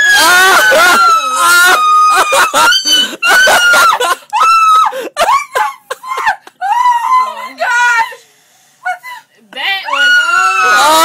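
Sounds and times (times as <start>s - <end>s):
person screaming: 9.9s - 11.0s.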